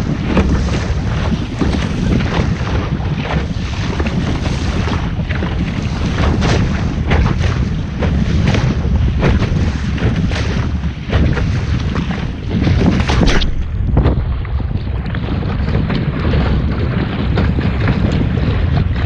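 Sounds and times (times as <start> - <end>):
water splashing against hull: 0.0 - 19.0
wind buffeting microphone: 0.0 - 19.0.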